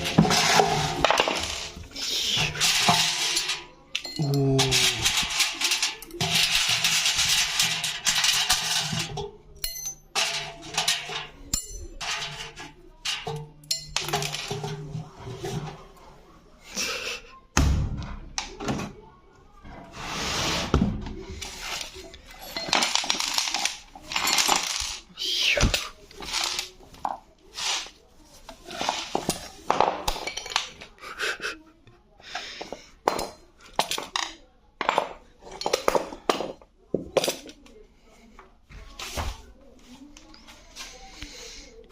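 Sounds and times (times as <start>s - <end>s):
metal parts clanking: 0.0s - 15.7s, 21.4s - 25.1s, 25.7s - 26.8s.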